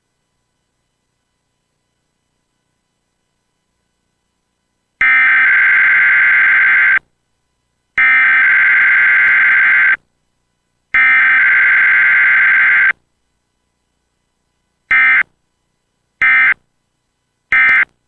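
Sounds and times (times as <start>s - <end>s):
buzzing digital data tone: 5.0s - 7.0s, 8.0s - 10.0s, 11.0s - 12.9s.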